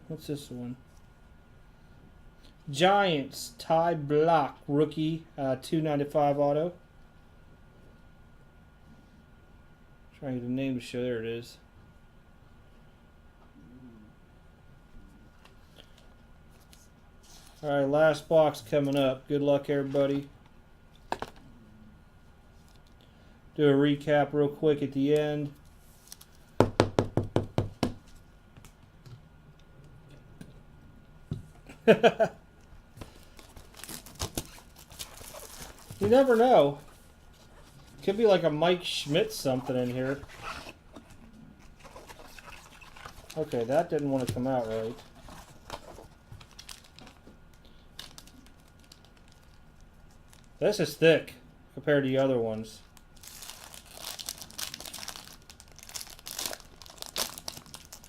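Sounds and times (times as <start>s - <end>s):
wrapping rustling: 33.0s - 38.4s, 39.0s - 50.6s, 52.8s - 58.0s.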